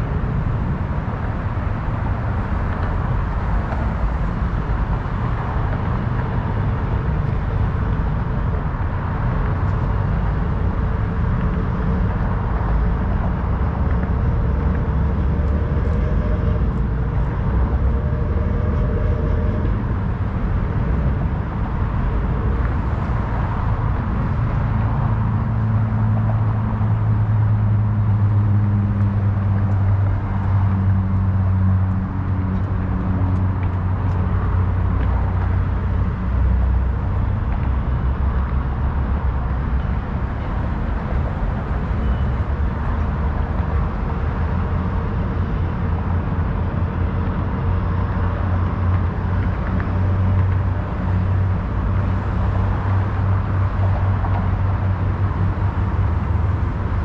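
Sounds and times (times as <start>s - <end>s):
city traffic noise: 0.0s - 57.0s
low engine hum: 0.0s - 57.0s.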